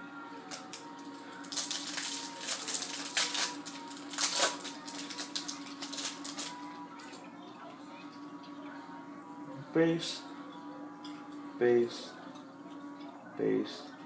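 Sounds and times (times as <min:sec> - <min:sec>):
foil wrapper tearing and crinkling: 0:01.4 - 0:06.6.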